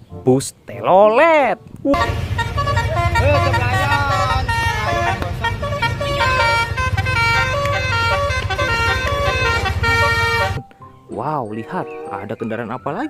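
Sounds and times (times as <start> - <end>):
multi-tone musical bus horn: 1.9 - 10.6.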